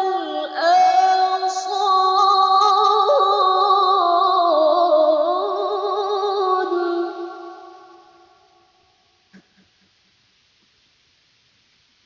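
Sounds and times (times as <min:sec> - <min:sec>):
person chanting melodically: 0:00.0 - 0:08.3.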